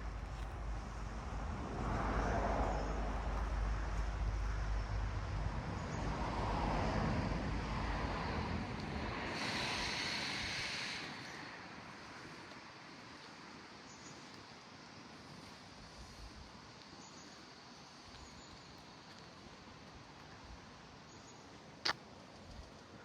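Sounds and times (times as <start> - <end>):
wind rumbling on microphone: 0.0 - 12.8
bright hiss: 8.1 - 14.6.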